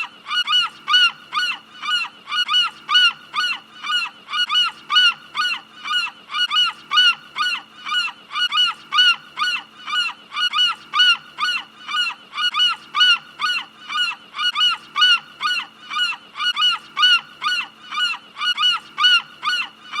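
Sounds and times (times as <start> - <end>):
seagull calling: 0.0 - 20.0.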